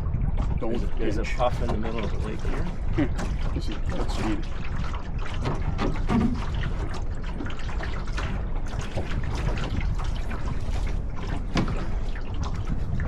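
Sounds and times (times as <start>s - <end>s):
water splashing along hull: 0.0s - 13.0s
wind rumble on microphone: 0.0s - 13.0s.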